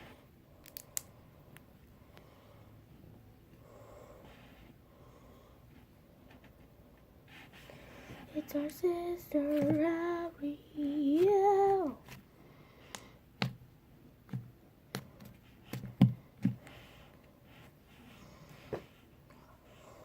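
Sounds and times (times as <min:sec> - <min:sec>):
person singing: 0:08.3 - 0:12.0.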